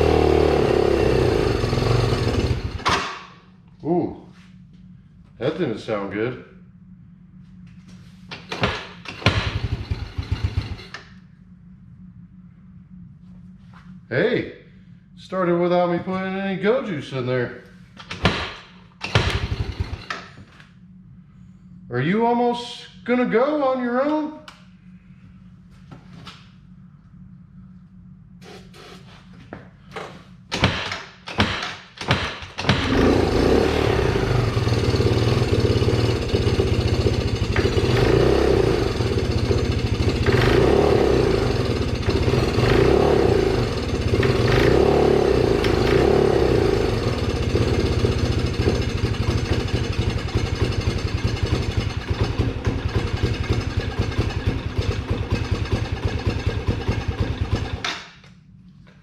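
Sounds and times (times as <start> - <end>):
engine cranking and running: 0.0 - 3.2, 8.4 - 11.2, 18.0 - 20.5, 30.5 - 58.4.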